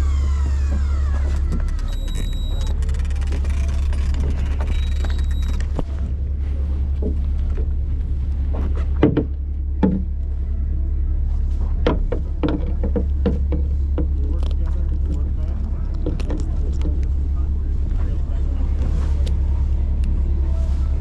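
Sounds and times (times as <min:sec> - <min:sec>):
boat engines droning: 0:00.0 - 0:21.0
knocks and clatter on deck: 0:08.5 - 0:10.2, 0:11.8 - 0:14.4.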